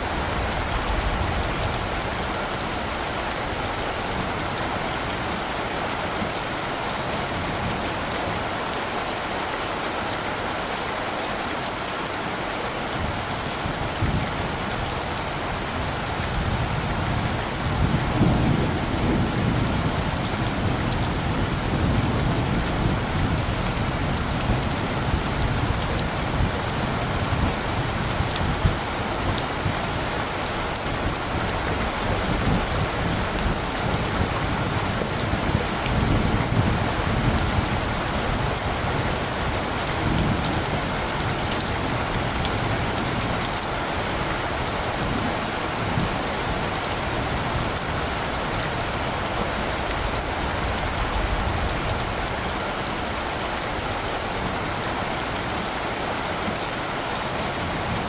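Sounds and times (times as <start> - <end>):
rain falling: 0.0 - 58.0
low rumble of thunder: 13.0 - 52.6.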